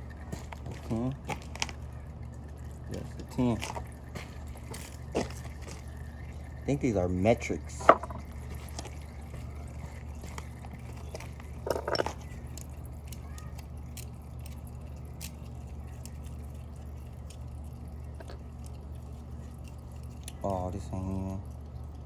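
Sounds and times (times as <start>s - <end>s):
steady low hum: 0.0s - 22.0s
tools clattering: 7.8s - 8.2s, 11.2s - 12.2s.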